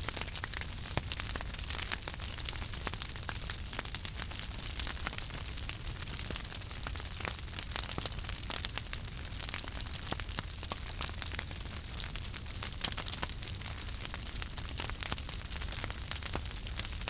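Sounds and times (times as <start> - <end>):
fire crackling: 0.0 - 17.0.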